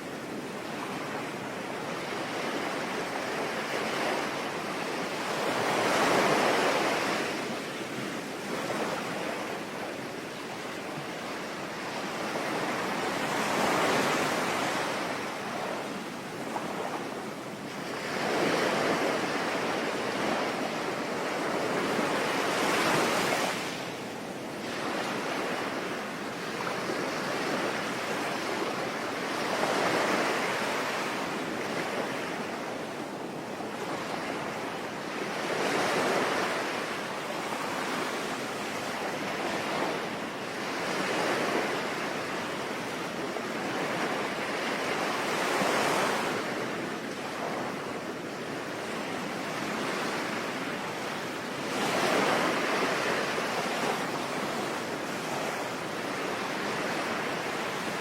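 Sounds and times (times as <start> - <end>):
sea waves breaking: 48.8 - 58.0.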